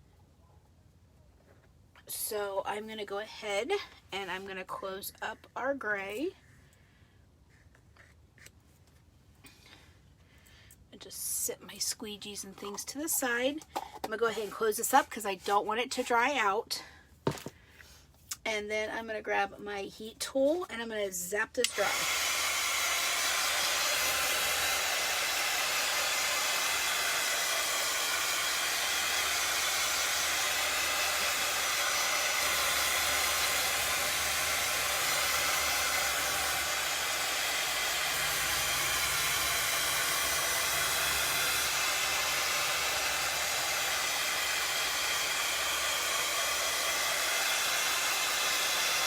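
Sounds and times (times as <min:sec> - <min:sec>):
heat tool blowing hot air: 0:21.6 - 0:49.0.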